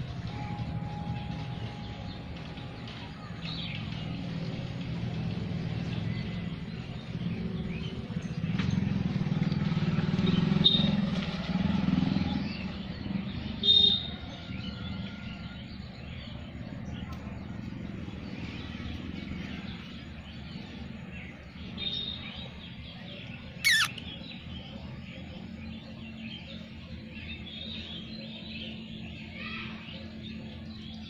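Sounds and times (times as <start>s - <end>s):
vehicle engine driving past: 0.0s - 13.6s
birds chirping: 16.8s - 31.0s.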